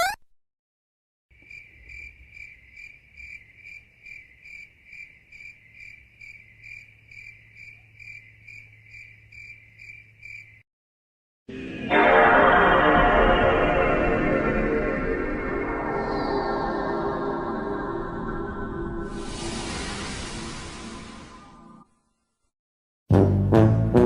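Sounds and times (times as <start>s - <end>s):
crickets chirping: 1.4s - 10.6s.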